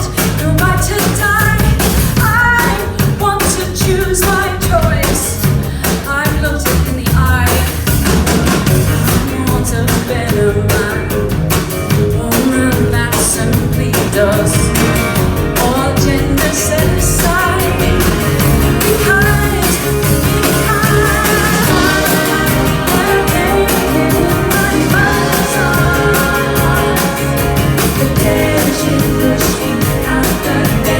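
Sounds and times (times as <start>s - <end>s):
live rock band playing: 0.0s - 30.9s
person singing: 12.1s - 30.9s.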